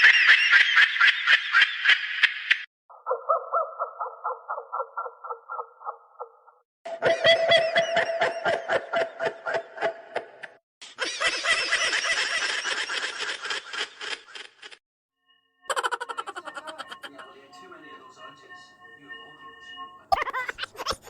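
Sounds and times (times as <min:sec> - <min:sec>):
higher dense laughter: 0:15.7 - 0:17.2, 0:20.1 - 0:21.0
laughter in quick pulses: 0:20.1 - 0:21.0.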